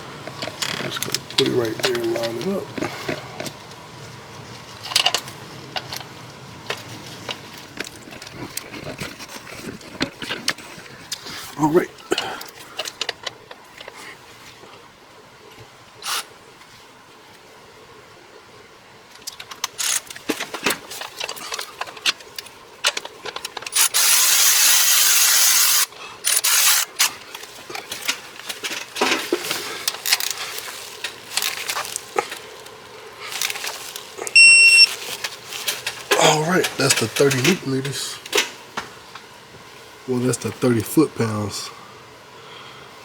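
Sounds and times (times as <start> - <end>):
ratchet wrench clicking: 23.7 - 27.1
short electronic beep: 34.4 - 34.9.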